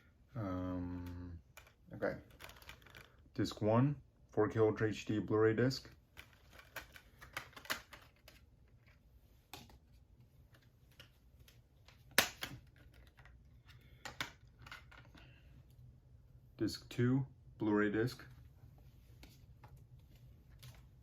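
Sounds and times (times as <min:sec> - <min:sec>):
plastic case and discs clicking: 0:01.5 - 0:03.2, 0:05.9 - 0:09.8, 0:10.5 - 0:15.3.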